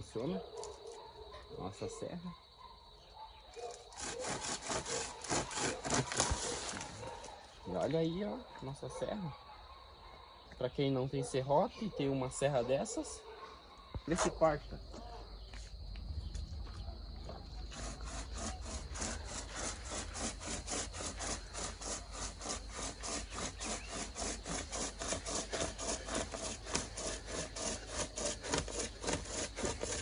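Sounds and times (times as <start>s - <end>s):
saw rasping through wood: 3.6s - 8.4s, 17.6s - 30.0s.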